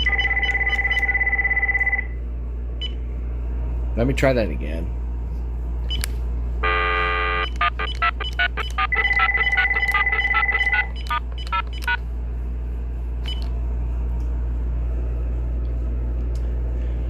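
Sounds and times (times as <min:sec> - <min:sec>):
low hum: 0:00.0 - 0:17.0
phone key beeps: 0:07.4 - 0:12.0.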